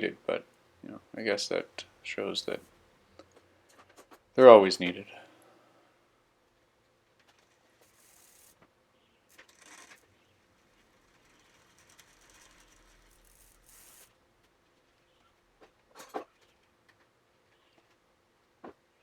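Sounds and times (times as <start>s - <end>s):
bicycle chain running over cogs: 7.2s - 8.6s, 9.3s - 14.2s
freehub ratcheting: 7.2s - 8.6s, 9.3s - 14.2s.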